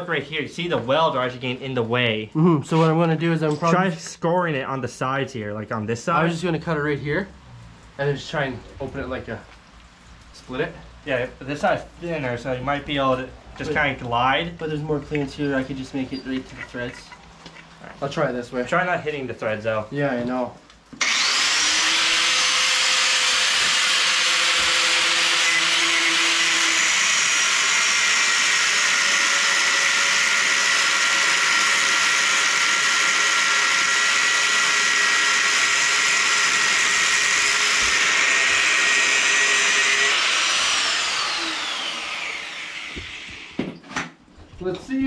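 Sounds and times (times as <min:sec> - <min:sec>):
angle grinder cutting metal: 0:21.0 - 0:43.6.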